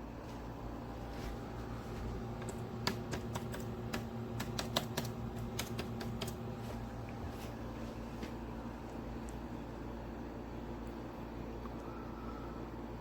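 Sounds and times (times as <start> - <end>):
air conditioner humming: 0.0 - 13.0
sharp clicks: 2.4 - 6.4.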